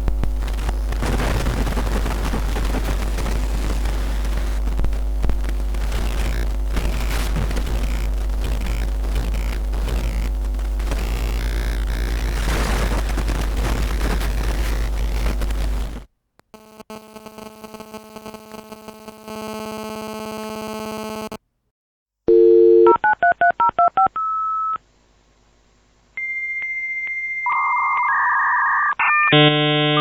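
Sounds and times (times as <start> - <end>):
buzzing electronic drone: 0.0 - 21.3, 29.4 - 30.0.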